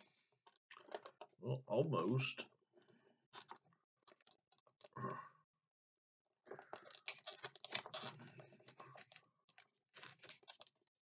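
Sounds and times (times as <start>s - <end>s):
plastic packaging rustling: 6.7s - 10.9s.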